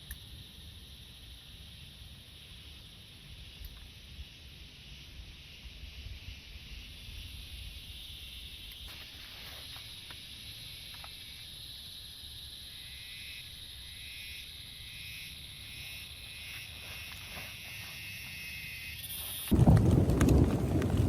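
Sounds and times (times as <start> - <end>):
rain hiss: 0.0 - 18.0, 18.6 - 21.0.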